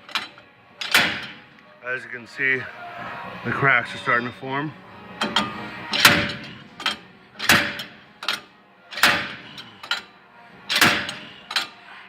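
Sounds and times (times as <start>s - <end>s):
slide hammer metal impacts: 0.0s - 1.5s, 5.2s - 10.1s, 10.7s - 11.8s.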